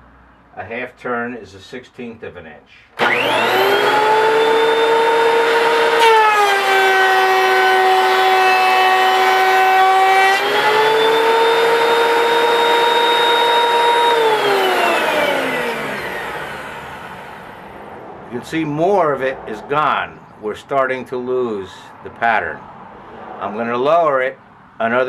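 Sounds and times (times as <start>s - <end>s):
thickness planer whining: 3.0s - 19.8s.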